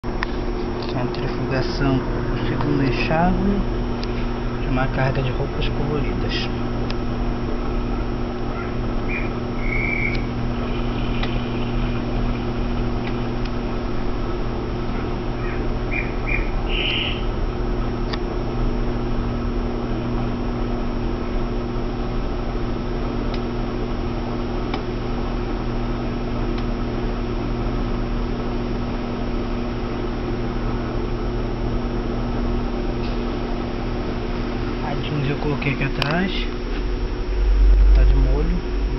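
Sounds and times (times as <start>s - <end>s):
washing machine spin cycle hum: 0.0s - 38.9s.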